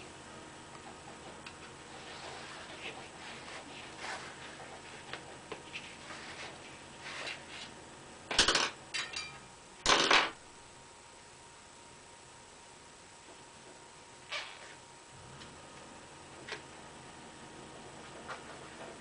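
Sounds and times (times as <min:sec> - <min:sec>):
metallic objects clattering together: 0:08.3 - 0:10.4.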